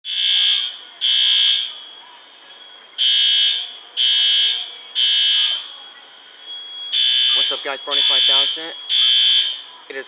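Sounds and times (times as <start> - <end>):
fire alarm horn blasts: 0.0 - 2.1, 2.9 - 5.8, 6.5 - 10.0.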